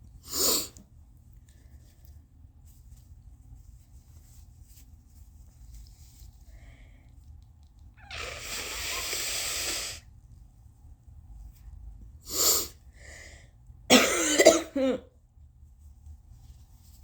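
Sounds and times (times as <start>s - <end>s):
person blowing nose: 0.3s - 0.7s, 8.0s - 10.1s, 12.3s - 12.8s
short burst of breath: 8.0s - 10.0s
loud cough: 13.9s - 15.1s.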